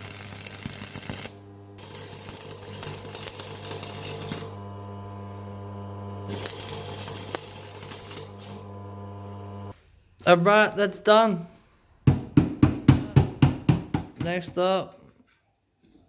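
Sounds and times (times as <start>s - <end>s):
stick welder arc crackling: 0.0s - 9.8s.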